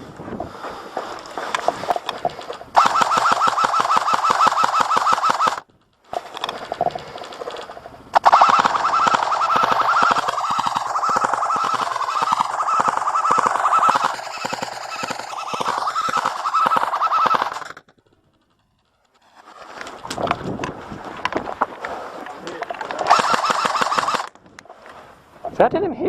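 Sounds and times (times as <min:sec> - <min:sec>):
gearbox whine: 0:00.0 - 0:24.8
airsoft gun firing bursts: 0:01.1 - 0:18.0, 0:22.9 - 0:24.4.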